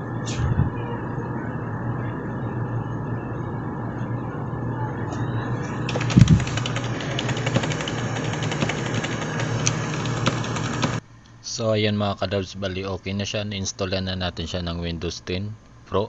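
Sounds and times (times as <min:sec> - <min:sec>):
computer humming: 0:00.0 - 0:11.0
rapid light clicking: 0:05.9 - 0:11.0.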